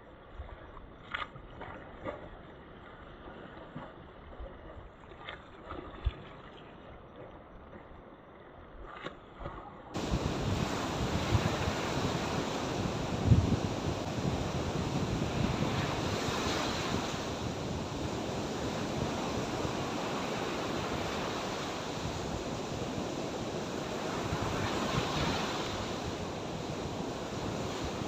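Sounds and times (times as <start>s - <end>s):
sea surf: 9.9s - 28.0s
wind buffeting microphone: 10.0s - 28.0s.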